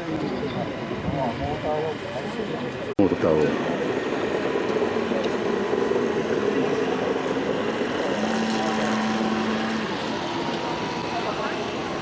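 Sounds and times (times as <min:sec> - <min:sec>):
model boat motor whirring: 0:03.9 - 0:12.0.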